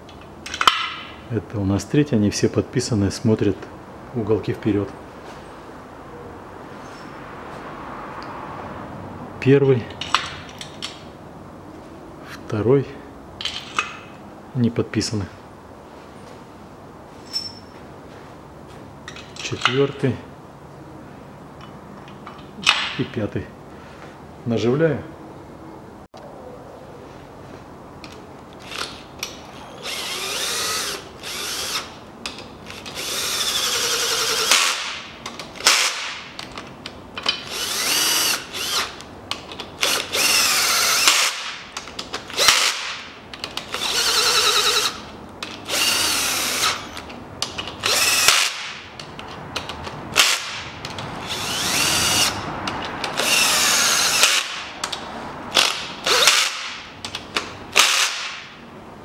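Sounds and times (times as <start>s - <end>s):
power driver whining: 37.3s - 58.2s.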